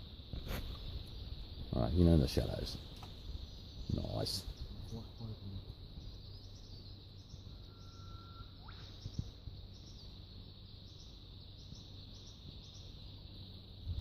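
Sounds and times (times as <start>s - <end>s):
high-pitched insect chorus: 0.0s - 14.0s
bird whistling: 7.4s - 9.3s.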